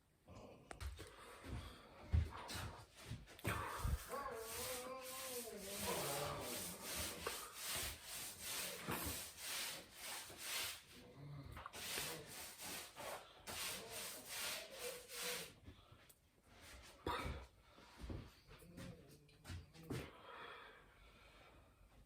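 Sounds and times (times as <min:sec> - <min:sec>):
hand sanding strokes: 0:02.6 - 0:11.0, 0:11.6 - 0:15.6.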